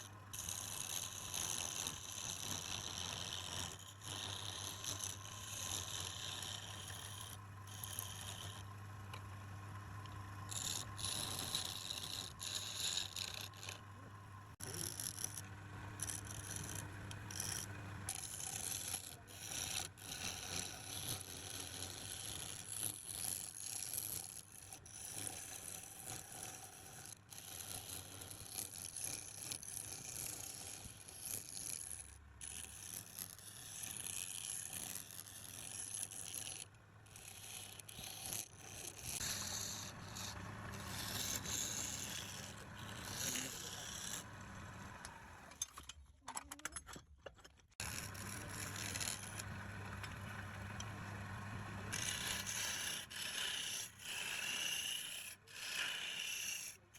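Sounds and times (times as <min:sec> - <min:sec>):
turning tool scraping wood: 0:00.0 - 0:08.8, 0:10.0 - 0:45.8, 0:47.8 - 0:56.9
lathe motor hum: 0:02.3 - 0:20.2, 0:36.6 - 0:45.6, 0:47.8 - 0:56.7.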